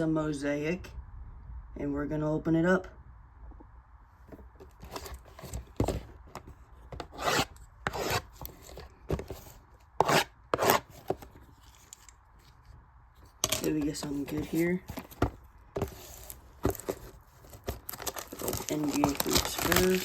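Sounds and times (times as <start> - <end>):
cardboard and wrapper scraping: 4.3 - 20.0.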